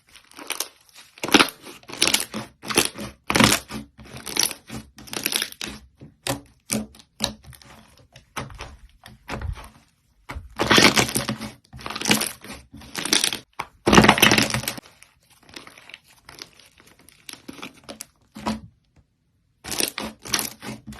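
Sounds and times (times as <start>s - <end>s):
slime crackling and popping: 0.0s - 5.8s, 10.6s - 14.8s.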